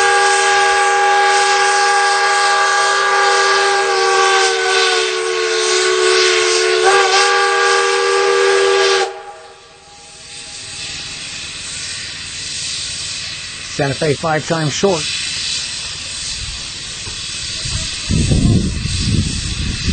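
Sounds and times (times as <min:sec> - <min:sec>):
steam whistle blowing: 0:00.0 - 0:12.0
steam hiss: 0:00.0 - 0:19.9.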